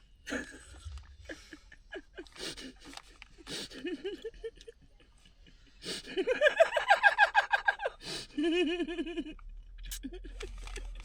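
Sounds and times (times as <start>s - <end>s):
lower-pitched laughter: 0.3s - 11.0s.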